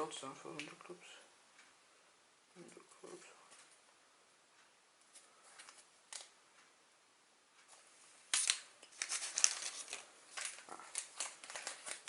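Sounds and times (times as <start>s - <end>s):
cards and packaging clicking: 8.3s - 12.0s.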